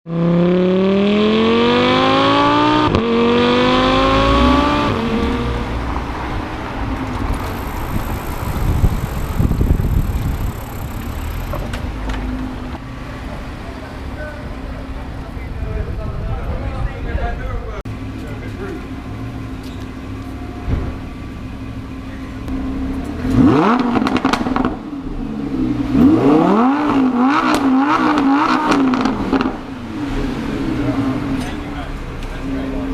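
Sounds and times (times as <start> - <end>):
sports car engine accelerating: 0.1 - 15.4, 17.9 - 32.9
road and traffic noise: 0.1 - 32.9
exhaust pops and crackles: 7.0 - 12.8, 23.0 - 24.8, 27.4 - 29.6.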